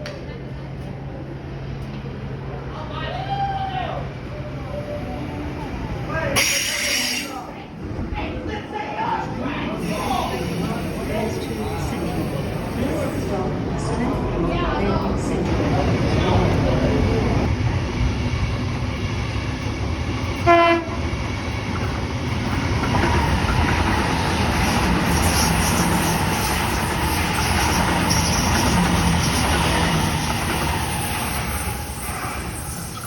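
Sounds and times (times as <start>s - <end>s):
train running on rails: 0.0s - 33.0s
train horn blast: 20.4s - 21.0s.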